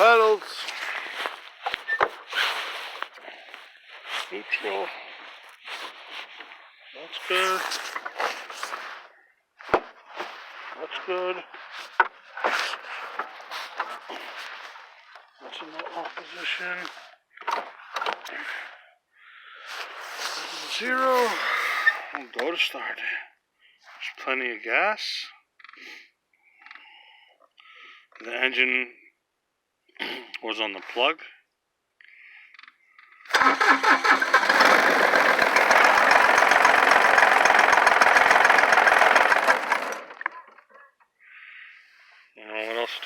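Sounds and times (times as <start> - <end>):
rustling: 0.0 - 10.8, 19.7 - 21.5
diesel engine starting and knocking: 33.3 - 40.7.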